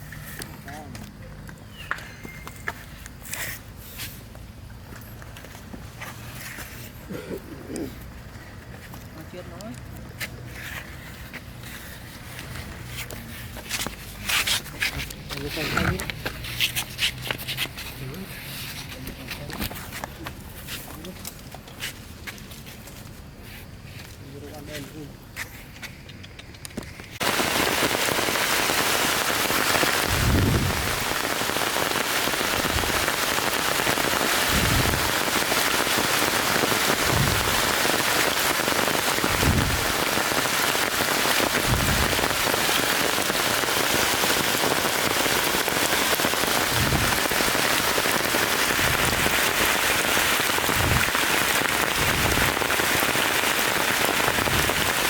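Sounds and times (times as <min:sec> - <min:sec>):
heavy rain falling: 0:27.1 - 0:55.0.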